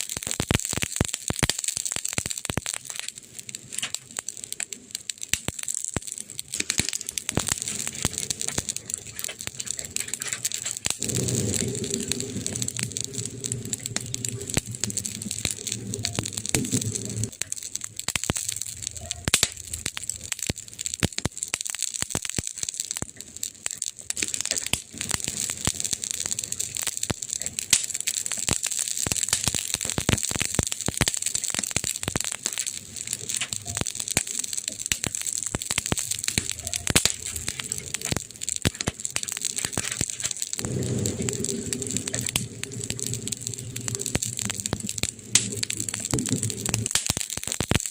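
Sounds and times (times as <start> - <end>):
burning wood crackling: 0.0 - 47.9
low hum: 10.8 - 17.4, 40.6 - 46.9.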